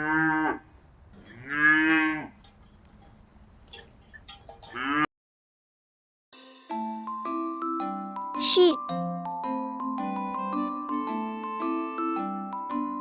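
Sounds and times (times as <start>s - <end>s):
cow mooing: 1.3s - 2.4s, 4.7s - 5.1s.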